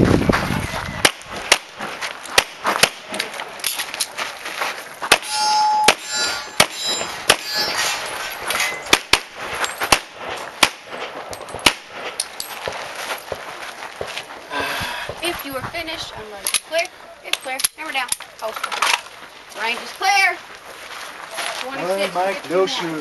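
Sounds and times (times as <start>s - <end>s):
handgun shots: 5.1s - 7.6s, 8.5s - 12.3s
steel targets ringing: 5.1s - 9.0s.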